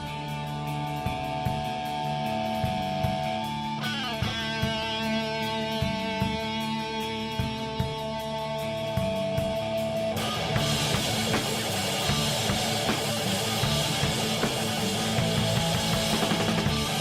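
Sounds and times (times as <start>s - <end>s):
distorted electric guitar: 0.0s - 17.0s
drums: 0.0s - 17.0s.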